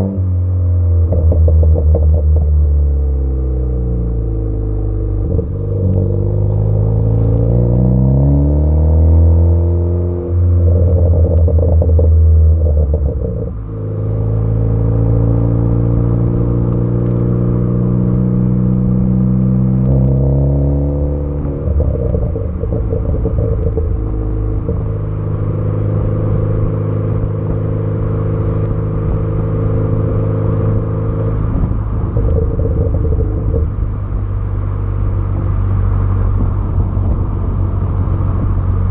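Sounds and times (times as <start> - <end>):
car engine revving: 0.0 - 38.9
exhaust crackling pops: 1.0 - 2.6, 10.6 - 13.6, 21.4 - 25.2, 31.5 - 34.4.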